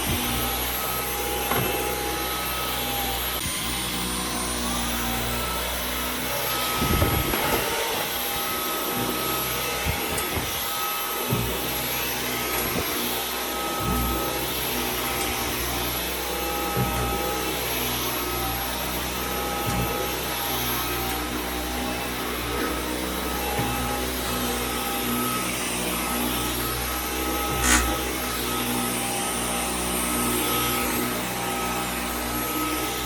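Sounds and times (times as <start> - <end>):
cordless vacuum running: 0.0 - 33.0.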